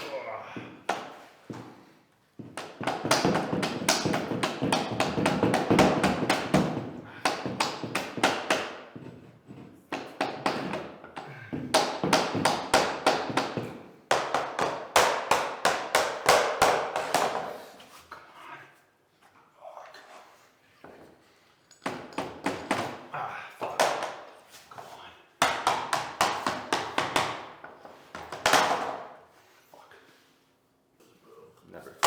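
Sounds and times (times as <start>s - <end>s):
floor planks being tapped: 0.6s - 17.6s, 21.7s - 29.2s.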